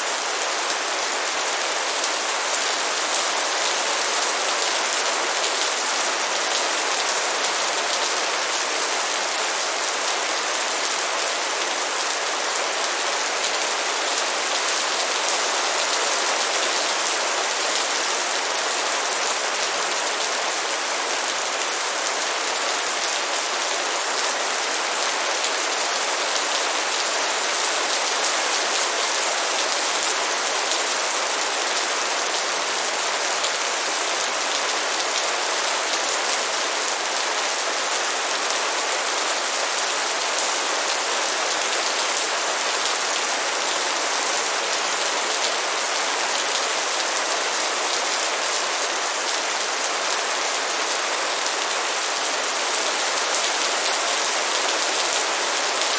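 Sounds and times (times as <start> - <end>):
rain falling steadily: 0.0 - 55.9.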